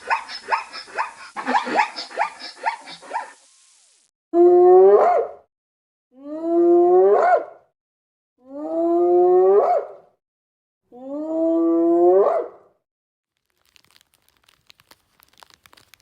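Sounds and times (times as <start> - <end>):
animal calling: 0.0 - 3.3.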